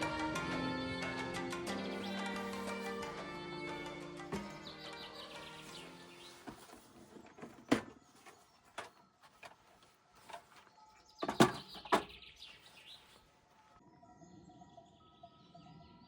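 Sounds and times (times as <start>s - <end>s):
birds chirping faintly: 0.0s - 16.0s
knocks and clatters of handled objects: 6.3s - 12.2s.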